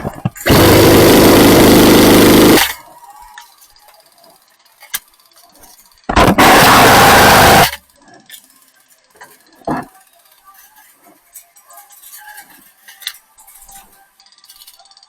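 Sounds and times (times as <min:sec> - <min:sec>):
airsoft gun firing full auto: 0:00.4 - 0:02.8, 0:06.1 - 0:07.8.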